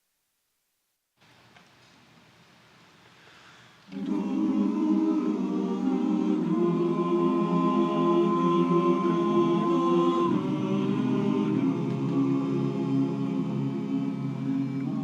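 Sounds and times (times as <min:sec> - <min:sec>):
chorus singing in harmony: 0:03.9 - 0:15.0.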